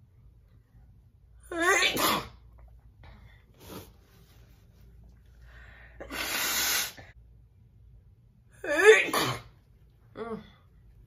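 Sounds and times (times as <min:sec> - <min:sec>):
woman sneezing: 0:01.5 - 0:02.4, 0:08.7 - 0:09.5.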